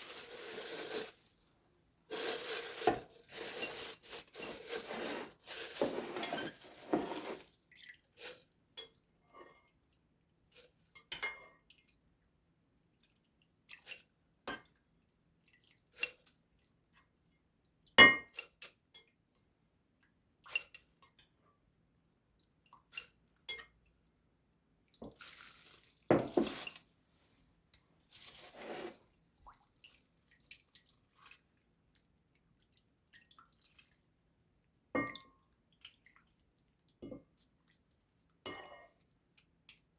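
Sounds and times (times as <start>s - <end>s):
rustling and scraping: 2.1s - 7.5s, 25.2s - 27.4s, 28.1s - 29.1s
dishes clinking and knocking: 5.8s - 7.4s, 26.1s - 26.6s.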